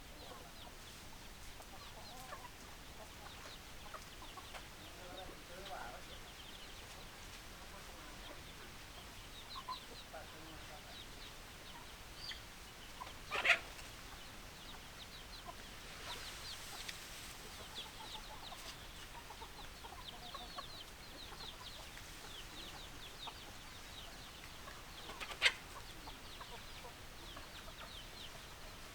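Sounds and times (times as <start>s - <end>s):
chicks peeping: 0.0s - 28.9s
chickens squawking: 7.8s - 28.9s.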